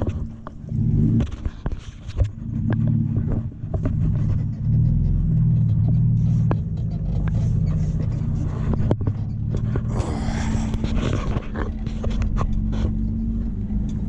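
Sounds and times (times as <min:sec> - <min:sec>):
engine running: 0:00.0 - 0:14.0.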